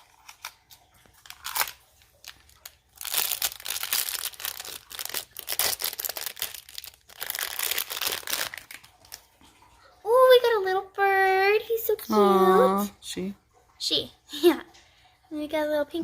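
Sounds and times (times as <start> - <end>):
plastic packaging crinkling and tearing: 0.0 - 9.3.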